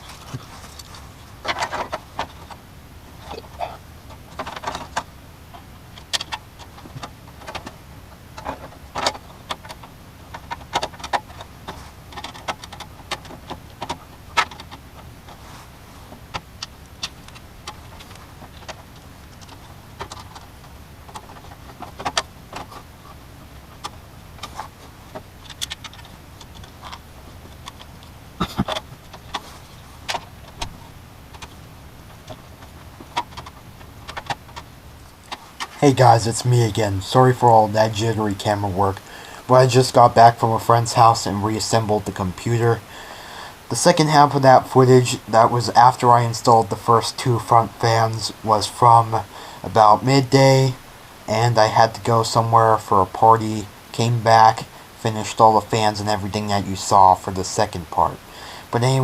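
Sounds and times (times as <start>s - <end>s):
plastic and metal parts rattling: 0.0s - 2.6s, 3.2s - 5.1s, 8.4s - 15.4s, 23.8s - 35.8s
low steady hum: 0.0s - 59.0s.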